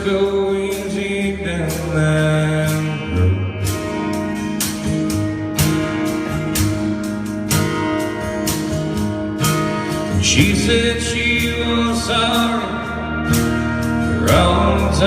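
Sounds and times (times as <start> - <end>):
person singing: 0.0 - 4.0, 10.1 - 13.2, 14.0 - 15.0
guitar playing: 0.0 - 15.0
live band playing country ballad: 0.0 - 15.0.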